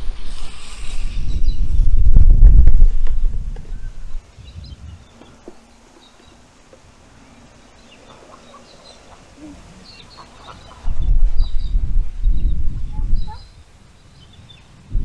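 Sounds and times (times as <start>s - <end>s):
wind buffeting microphone: 0.0s - 5.4s, 9.5s - 15.0s.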